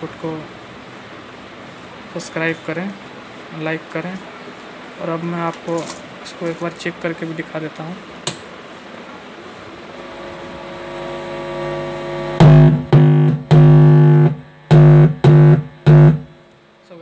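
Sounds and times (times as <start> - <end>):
amplifier hiss: 9.8 - 17.0
loud music through amplifier: 10.0 - 16.3.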